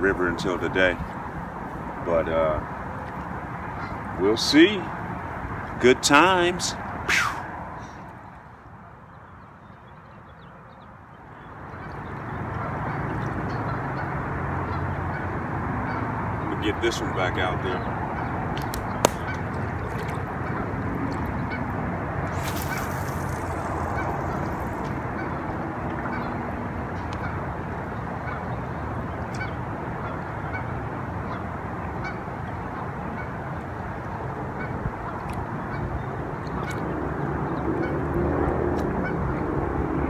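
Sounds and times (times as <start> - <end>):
brief hiss: 7.1 - 7.5, 22.3 - 25.0
sharp click: 18.6 - 19.4.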